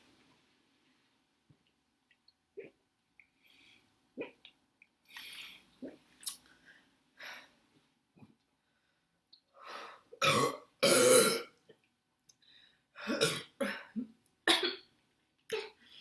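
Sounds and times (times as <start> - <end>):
woman burping: 10.2 - 11.5.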